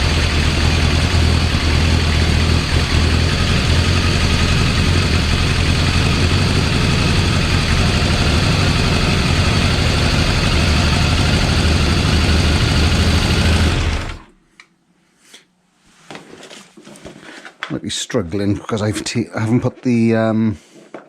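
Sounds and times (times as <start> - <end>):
motorcycle engine struggling: 0.0 - 14.3.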